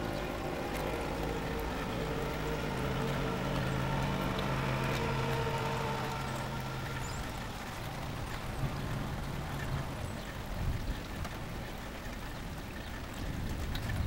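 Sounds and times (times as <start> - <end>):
small engine humming: 0.0 - 9.6.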